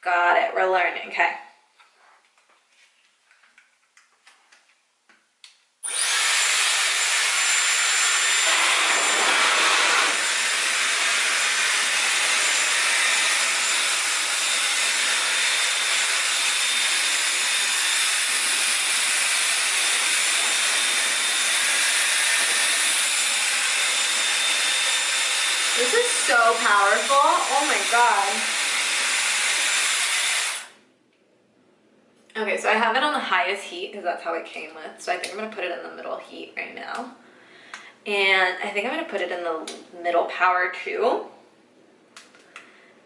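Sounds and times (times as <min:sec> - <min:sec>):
hair styler blowing air: 0:05.8 - 0:30.8.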